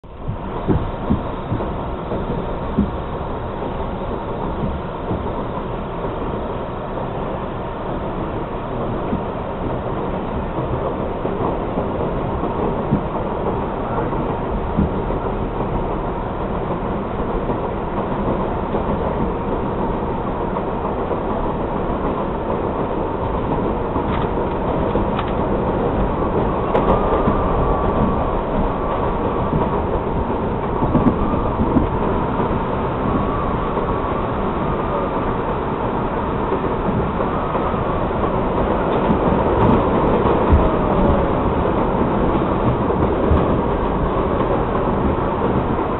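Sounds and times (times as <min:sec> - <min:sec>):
train wheels rumbling on rail: 0:00.0 - 0:45.9
clicks over rail joints: 0:22.0 - 0:32.0
wavering high squeal: 0:26.2 - 0:36.2.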